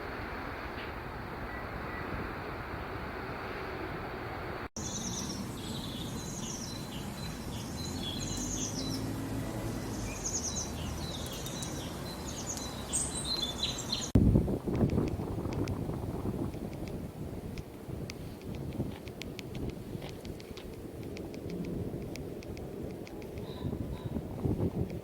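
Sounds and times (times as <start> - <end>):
wind buffeting microphone: 0.0 - 25.0
songbirds chirping: 4.8 - 14.2
light ticking: 16.5 - 23.6.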